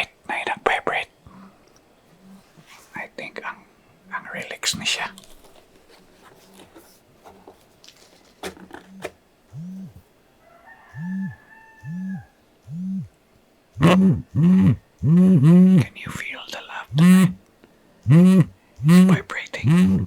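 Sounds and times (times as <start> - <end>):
vibration motor buzzing: 8.8 - 10.0, 11.0 - 13.1, 13.8 - 16.1, 16.9 - 17.4, 18.0 - 20.0.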